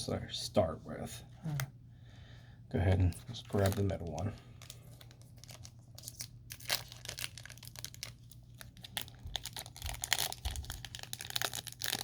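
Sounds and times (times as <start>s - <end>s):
wrapper tearing and crinkling: 3.4s - 12.0s.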